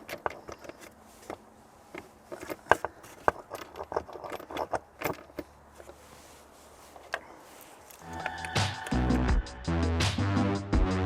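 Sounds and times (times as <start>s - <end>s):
metallic jingling rattles: 0.0s - 6.1s.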